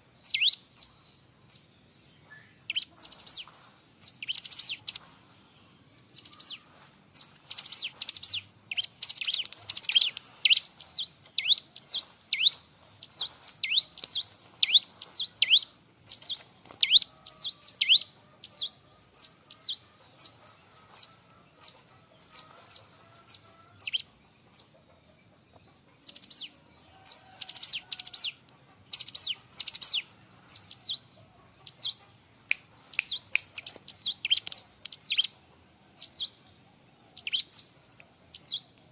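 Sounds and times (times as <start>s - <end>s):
scratchy bird chatters: 2.7s - 5.3s, 6.1s - 24.7s, 26.0s - 26.5s, 27.1s - 31.0s, 31.6s - 35.4s.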